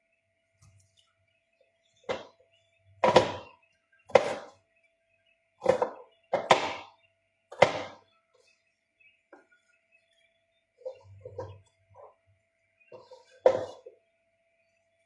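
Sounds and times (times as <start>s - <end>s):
knife chopping on cutting board: 3.0s - 3.5s, 4.1s - 4.5s.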